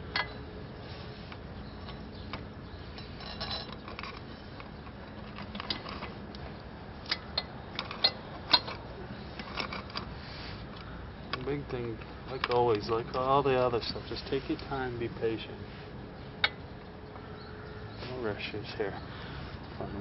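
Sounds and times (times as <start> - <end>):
metal parts clicking and clinking: 1.8 - 10.1.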